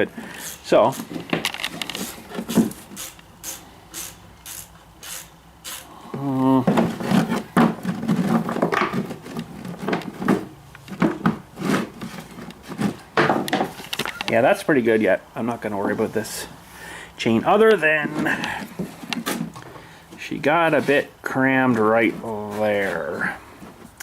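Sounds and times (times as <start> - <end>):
chain rubbing and scraping: 0.4 - 5.9.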